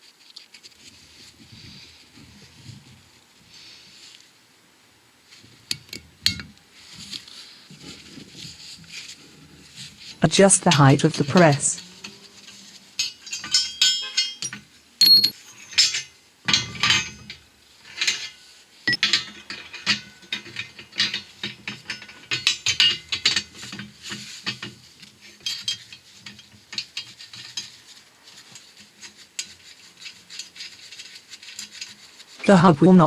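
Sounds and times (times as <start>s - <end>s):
metal parts clanking: 10.2s - 27.8s.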